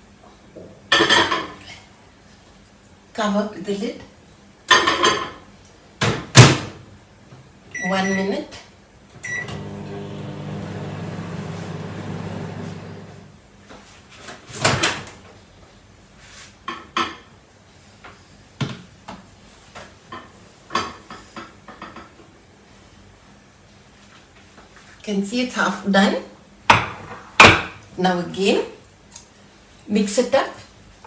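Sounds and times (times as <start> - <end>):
microwave beep: 7.8 - 8.3, 9.2 - 13.3
microwave humming: 9.2 - 13.4.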